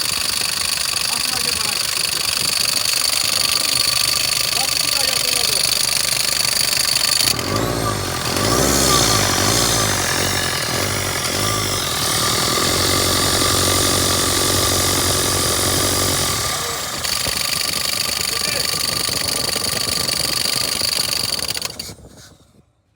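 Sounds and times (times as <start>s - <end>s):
diesel engine revving: 0.0s - 22.0s.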